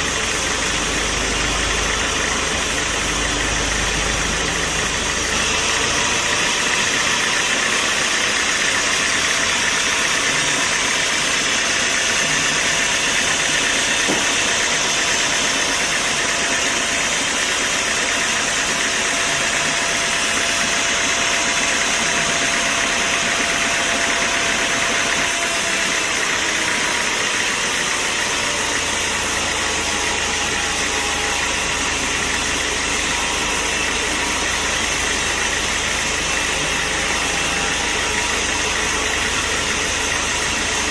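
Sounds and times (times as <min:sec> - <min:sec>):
sawmill machinery running: 0:00.0 - 0:40.9.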